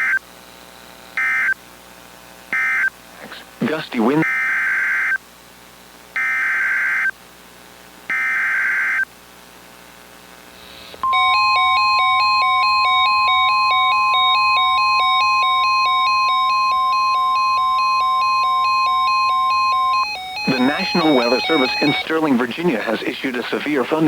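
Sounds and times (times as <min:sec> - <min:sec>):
loud steady high tone: 0:11.0 - 0:24.0
warbling digital data tones: 0:11.1 - 0:22.2.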